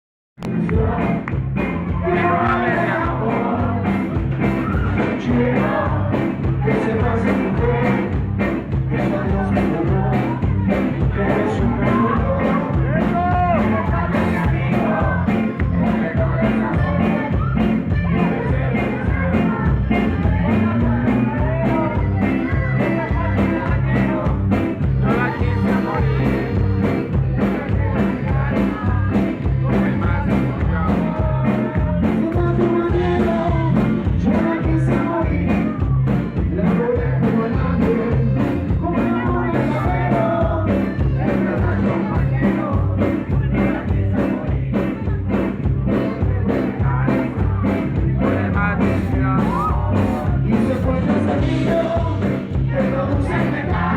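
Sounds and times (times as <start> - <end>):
rock music with singing: 0.4 - 53.9.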